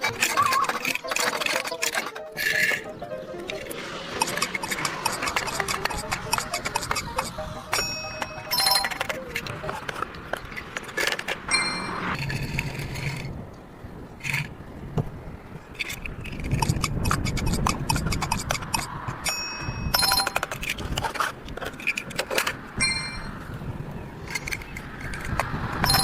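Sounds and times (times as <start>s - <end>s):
plastic toy cars clattering: 0.0s - 2.8s, 4.2s - 7.0s, 8.6s - 11.5s, 15.7s - 19.3s, 20.0s - 22.7s, 24.2s - 26.0s
high electronic beeping: 1.0s - 10.1s, 19.9s - 20.5s.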